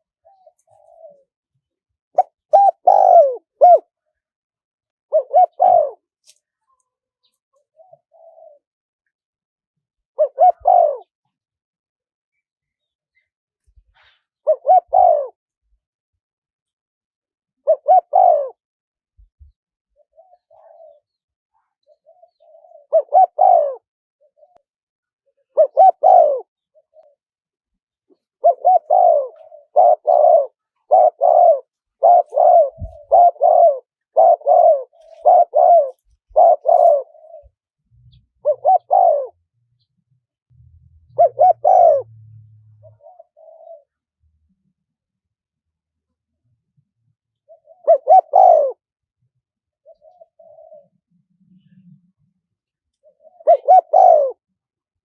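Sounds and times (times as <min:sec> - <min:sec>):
dove cooing: 0:00.0 - 0:01.5, 0:02.2 - 0:04.1, 0:05.1 - 0:06.4, 0:07.2 - 0:08.7, 0:10.2 - 0:11.2, 0:14.4 - 0:15.4, 0:17.6 - 0:18.6, 0:19.4 - 0:24.6, 0:25.2 - 0:27.2, 0:28.1 - 0:39.6, 0:40.6 - 0:44.0, 0:47.3 - 0:48.9, 0:49.7 - 0:52.3, 0:53.0 - 0:54.5.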